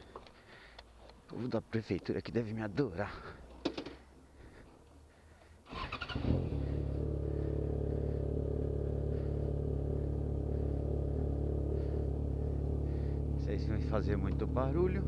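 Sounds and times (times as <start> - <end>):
motorcycle engine running: 5.7 - 15.0.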